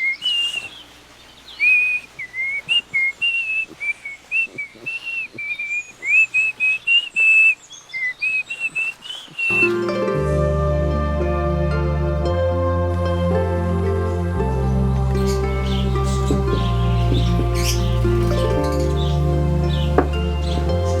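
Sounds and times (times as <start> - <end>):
bird whistling clear notes: 0.0 - 0.8, 1.6 - 9.8
faint chirps and clicks: 0.0 - 9.6.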